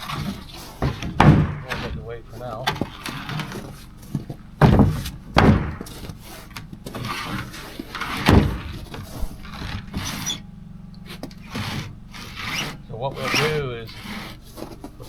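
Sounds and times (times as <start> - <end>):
light wooden knocks: 0.0 - 10.3
boards thumping on wood: 0.0 - 10.4, 11.0 - 15.0.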